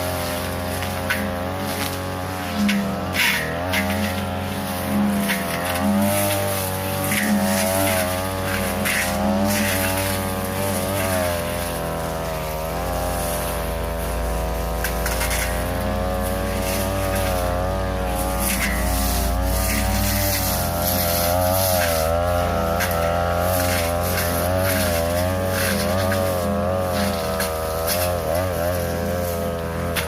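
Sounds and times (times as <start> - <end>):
blade striking stems: 0.0 - 30.0
brush cutter running: 0.0 - 30.0.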